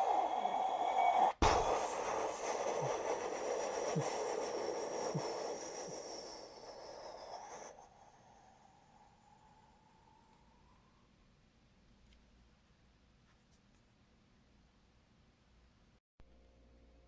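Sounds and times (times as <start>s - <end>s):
breathy mouth rushing noise: 0.0s - 11.0s.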